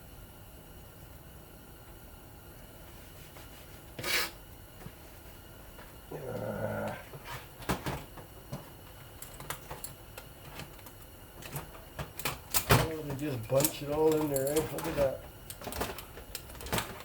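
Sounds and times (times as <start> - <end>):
scraping hiss: 3.3 - 4.4
low voice-like sound: 6.1 - 7.1
metal parts clicking and tapping: 9.2 - 17.0.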